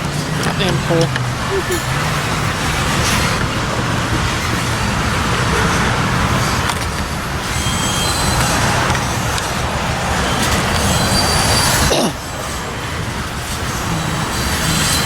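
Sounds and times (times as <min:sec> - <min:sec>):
train rumbling on rails: 0:00.0 - 0:15.0
high wheel squeal: 0:07.4 - 0:12.4, 0:13.7 - 0:15.0.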